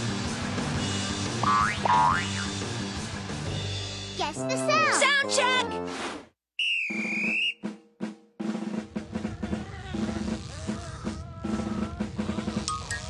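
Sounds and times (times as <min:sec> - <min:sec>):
short whistle-like tone: 0:06.6 - 0:07.7.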